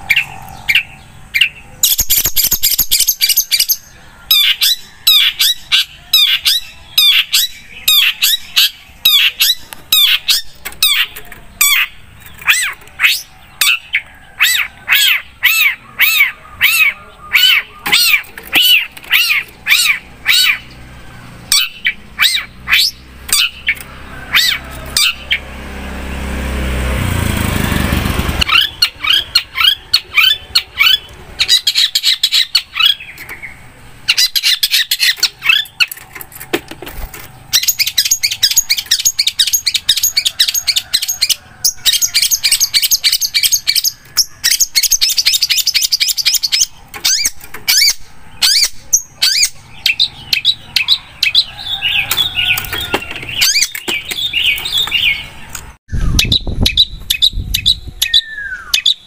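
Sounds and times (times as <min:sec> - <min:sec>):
shrike singing whistled notes: 0:55.9 - 0:59.0.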